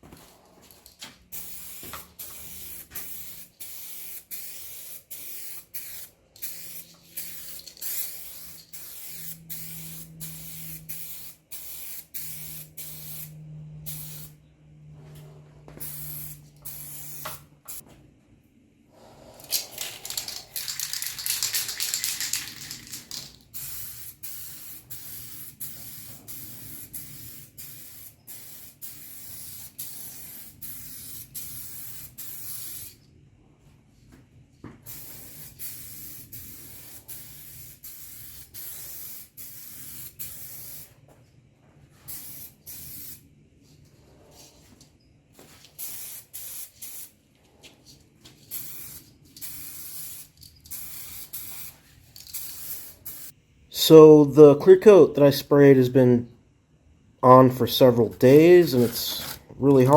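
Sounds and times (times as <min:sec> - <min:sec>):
aerosol can spraying: 0:01.3 - 0:14.4, 0:15.8 - 0:17.8, 0:19.4 - 0:33.0, 0:34.9 - 0:40.9, 0:45.7 - 0:47.1, 0:48.5 - 0:53.4.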